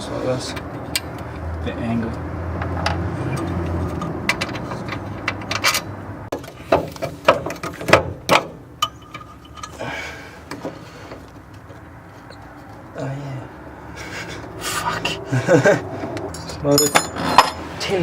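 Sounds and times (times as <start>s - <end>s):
metal hand tools clinking: 8.8s - 10.0s, 16.2s - 18.0s.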